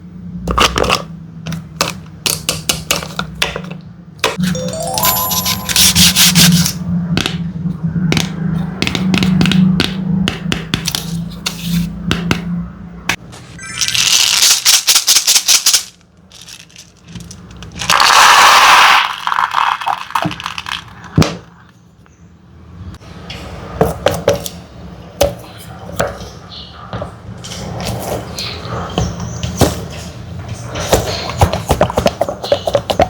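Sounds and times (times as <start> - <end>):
hard candies rattling into container: 13.8 - 21.2.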